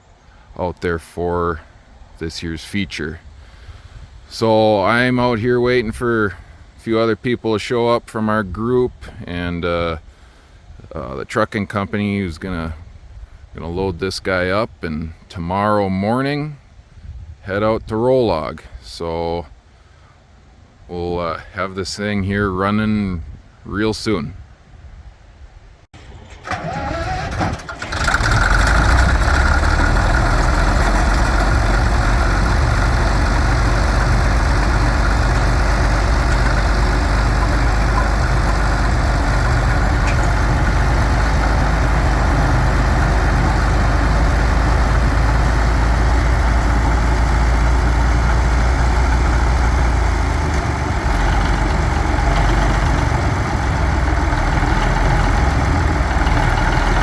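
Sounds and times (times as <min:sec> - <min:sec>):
diesel engine starting and idling: 0:26.0 - 0:57.0.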